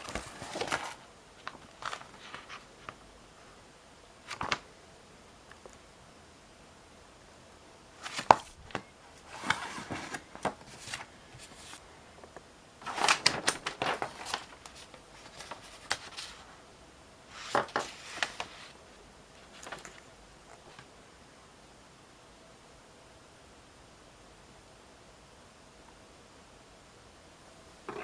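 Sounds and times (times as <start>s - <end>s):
cardboard and plastic rustling: 0.0s - 3.0s, 8.0s - 16.6s, 17.3s - 18.8s, 19.4s - 20.9s.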